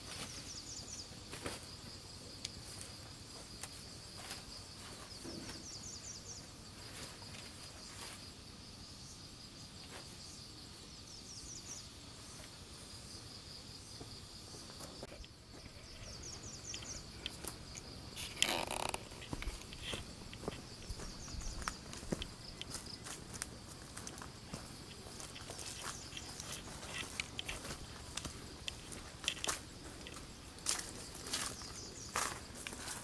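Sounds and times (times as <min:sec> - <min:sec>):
insects droning: 0:00.0 - 0:33.0
clicks and rustling: 0:24.9 - 0:30.2.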